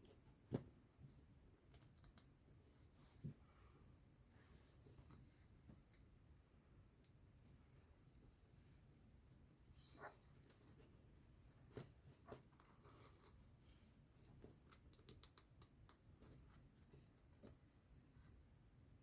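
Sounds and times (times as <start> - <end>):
soft rustles: 7.3 - 14.8
small clicks and ticks: 14.6 - 16.0.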